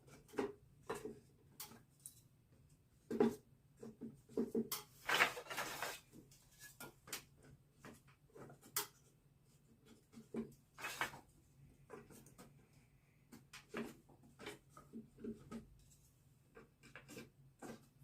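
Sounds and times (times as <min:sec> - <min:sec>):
rustling scrape: 0:05.0 - 0:06.8, 0:09.8 - 0:12.8.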